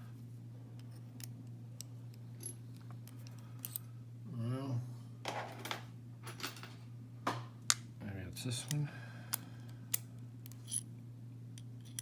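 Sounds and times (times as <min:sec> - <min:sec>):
steady low hum: 0:00.0 - 0:12.0
metal tools clinking: 0:10.5 - 0:10.9.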